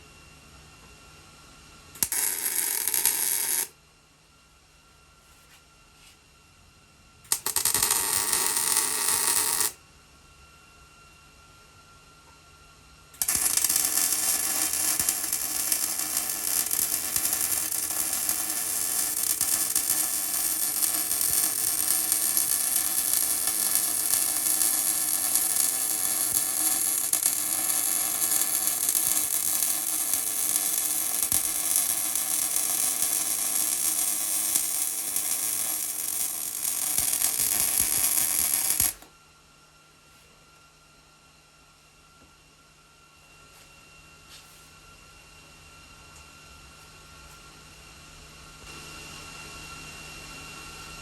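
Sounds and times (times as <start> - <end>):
welding arc crackling hiss: 2.0 - 3.7, 7.3 - 9.8, 13.2 - 39.1.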